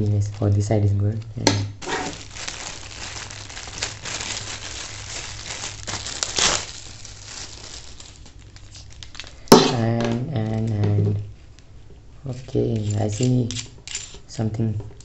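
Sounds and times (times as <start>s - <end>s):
packaging crinkling and rustling: 0.0s - 0.8s, 1.8s - 10.8s.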